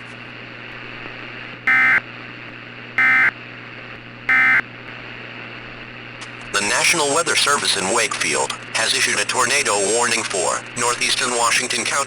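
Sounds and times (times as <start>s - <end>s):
digital data tone buzzes: 1.7s - 2.0s, 3.0s - 3.3s, 4.3s - 4.6s
radio hiss: 4.3s - 12.0s.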